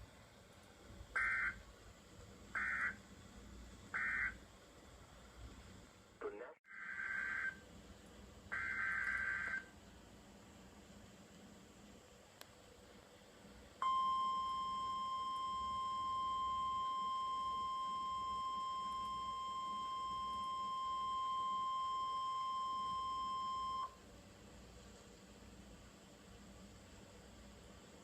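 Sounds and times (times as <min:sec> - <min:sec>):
steady alarm tone: 0:02.5 - 0:03.0, 0:03.9 - 0:04.4, 0:06.8 - 0:07.6, 0:08.5 - 0:09.7, 0:13.8 - 0:24.0.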